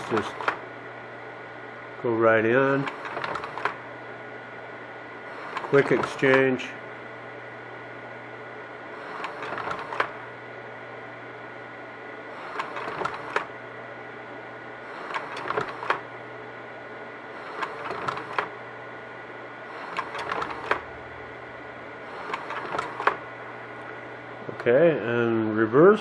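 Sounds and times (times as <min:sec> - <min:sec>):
slide projector clicks and clack: 0:00.0 - 0:00.6, 0:02.8 - 0:03.8, 0:05.4 - 0:06.5, 0:09.0 - 0:10.2, 0:12.4 - 0:13.5, 0:14.9 - 0:16.1, 0:17.4 - 0:18.6, 0:19.8 - 0:20.8, 0:22.1 - 0:24.0
projector hum: 0:00.0 - 0:26.0.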